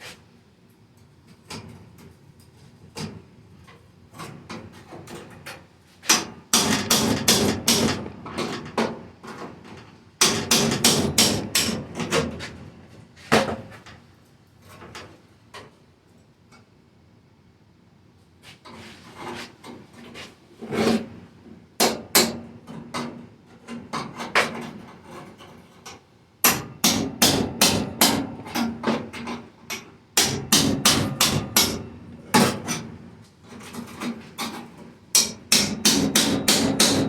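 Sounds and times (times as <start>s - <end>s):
hammer blows on sheet steel: 6.2s - 8.1s, 10.2s - 11.9s, 26.5s - 28.6s, 30.2s - 32.7s, 35.2s - 37.0s.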